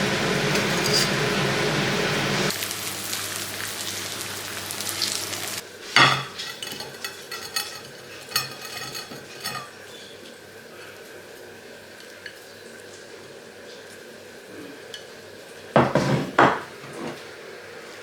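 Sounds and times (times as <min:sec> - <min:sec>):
food sizzling in a frying pan: 0:00.0 - 0:15.7
utensil clanking against pan: 0:00.5 - 0:01.2, 0:06.0 - 0:09.8
light clinks and scrapes: 0:06.1 - 0:09.8.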